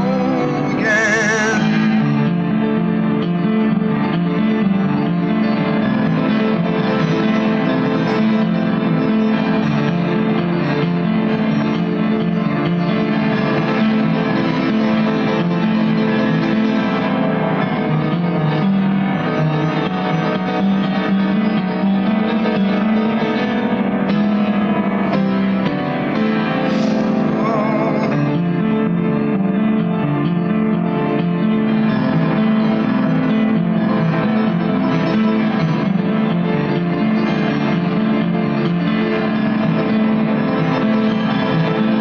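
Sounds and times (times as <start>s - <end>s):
guitar playing: 0.0s - 4.2s, 25.2s - 30.4s
keyboard accompaniment: 0.0s - 42.0s.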